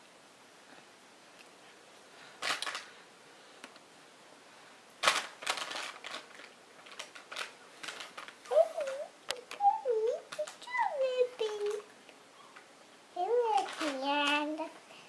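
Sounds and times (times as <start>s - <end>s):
rustling and clicking handling noise: 2.2s - 3.0s, 5.0s - 14.9s.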